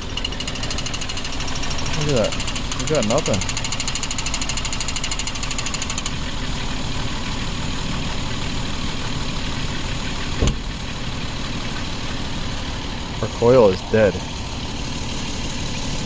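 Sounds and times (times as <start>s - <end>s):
fast high ticking: 0.0s - 6.3s
car engine idling with misfire: 0.0s - 16.0s.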